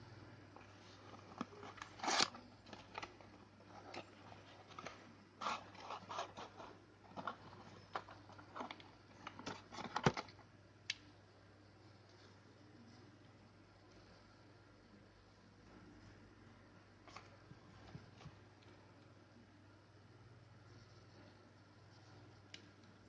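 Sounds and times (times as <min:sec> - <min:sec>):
faint low hum: 0:00.0 - 0:23.0
handling clicks and scrapes: 0:00.6 - 0:10.3.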